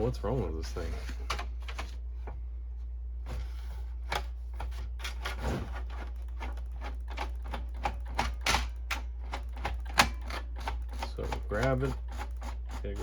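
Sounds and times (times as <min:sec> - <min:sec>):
steady low hum: 0:00.0 - 0:13.0
printer gears clicking and rattling: 0:04.1 - 0:13.0.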